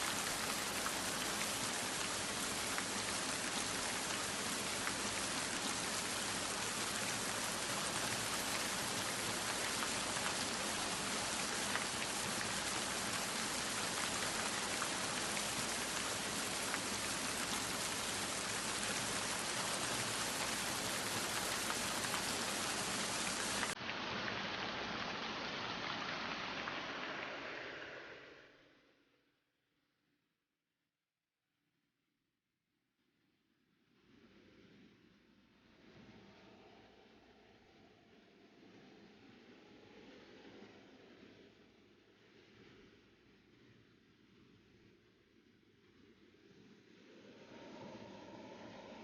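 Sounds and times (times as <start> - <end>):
steady rain falling: 0.0 - 28.4.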